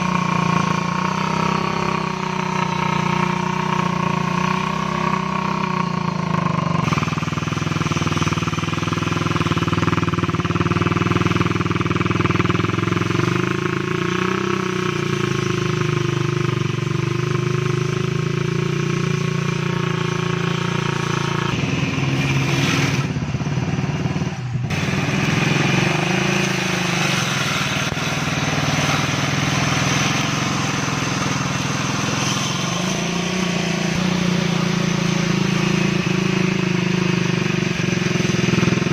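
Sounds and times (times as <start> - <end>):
grass cutter engine running: 0.0 - 13.8, 24.7 - 38.9.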